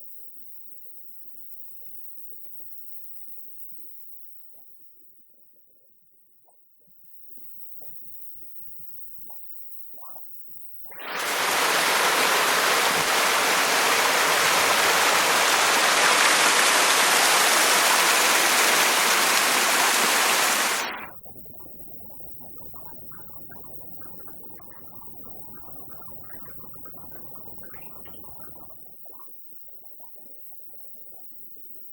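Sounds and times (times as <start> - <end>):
waterfall rushing: 11.0 - 21.1.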